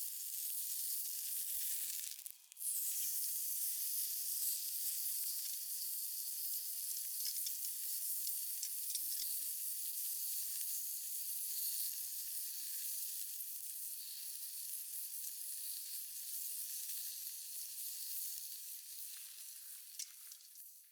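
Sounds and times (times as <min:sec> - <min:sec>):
meat sizzling on a grill pan: 0:00.0 - 0:20.8.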